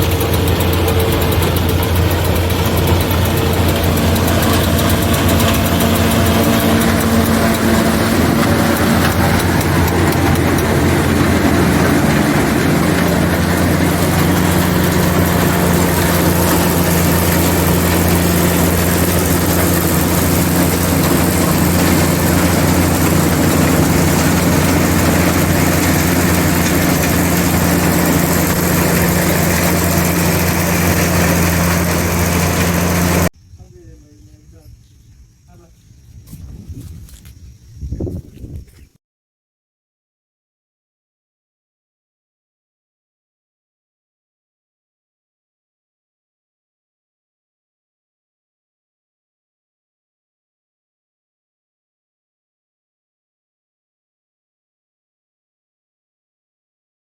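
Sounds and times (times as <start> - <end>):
tractor engine and chopping machinery: 0.0 - 33.3.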